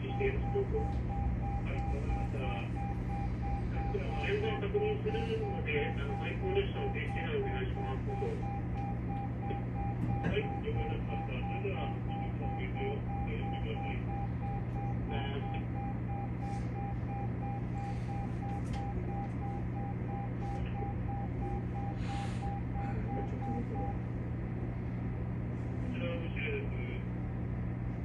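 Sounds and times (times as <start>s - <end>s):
warning buzzer beeping: 0.0s - 24.2s
train equipment hum: 0.0s - 28.0s.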